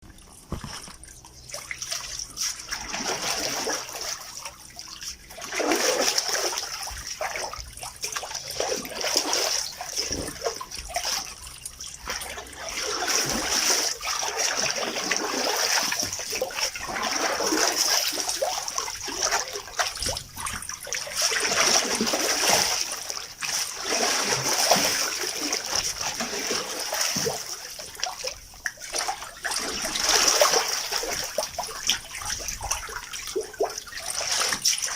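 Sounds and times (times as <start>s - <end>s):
water sloshing in washing machine: 0.0s - 34.9s.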